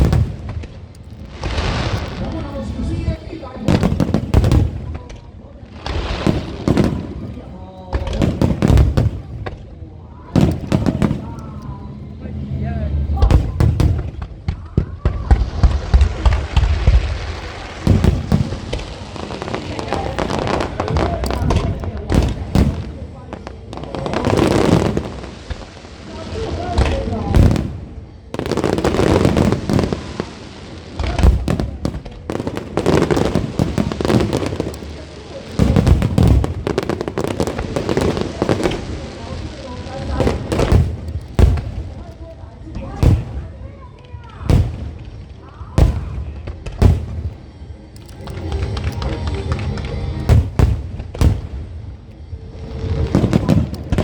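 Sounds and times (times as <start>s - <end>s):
firework shell bursts and booms: 0.0s - 5.1s, 5.8s - 7.4s, 8.0s - 9.6s, 10.4s - 11.4s, 13.2s - 23.1s, 26.7s - 30.3s, 31.0s - 39.3s, 40.0s - 42.1s, 42.8s - 43.6s, 44.4s - 45.2s, 45.8s - 47.5s, 50.2s - 51.8s, 53.0s - 54.0s
hissing crackle: 0.0s - 54.0s.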